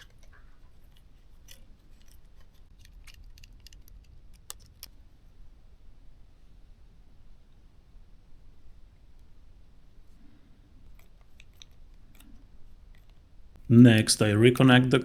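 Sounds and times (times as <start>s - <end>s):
screwdriver clicking on plastic: 0.0s - 4.9s.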